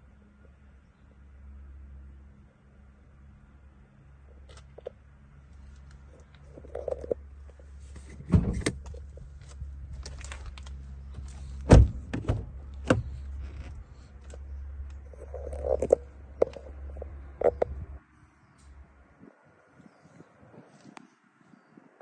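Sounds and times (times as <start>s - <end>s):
steady low hum: 0.0s - 22.0s
car clicks and knocks: 8.0s - 9.2s, 11.6s - 13.8s
heavy thump: 11.6s - 13.8s.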